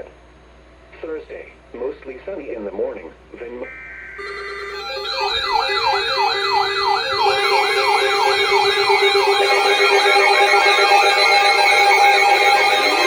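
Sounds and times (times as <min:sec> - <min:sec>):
steady high tone: 0:03.6 - 0:13.0
electronic siren yelping: 0:03.7 - 0:13.0
low warbling two-note siren: 0:03.7 - 0:13.0.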